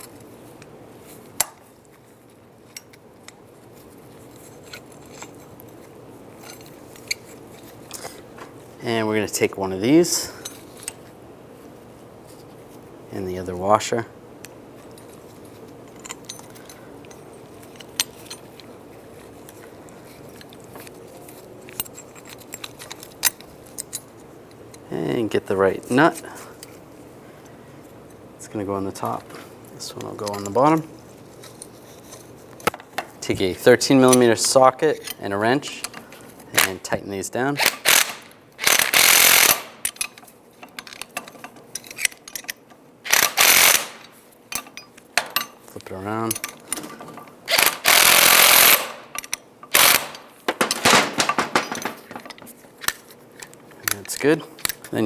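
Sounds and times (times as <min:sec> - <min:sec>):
faint steady hum: 0:00.0 - 0:55.0
metal parts clinking: 0:14.8 - 0:18.7, 0:20.4 - 0:24.9, 0:30.0 - 0:37.0, 0:37.6 - 0:55.0
socket ratchet clicking: 0:37.6 - 0:40.2, 0:43.1 - 0:44.1, 0:47.5 - 0:50.3.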